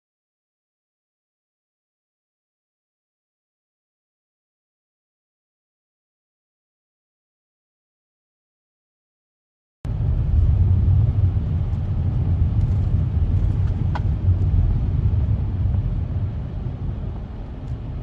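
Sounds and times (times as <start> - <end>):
heavy truck engine rumble: 9.9 - 18.0
road noise: 9.9 - 18.0.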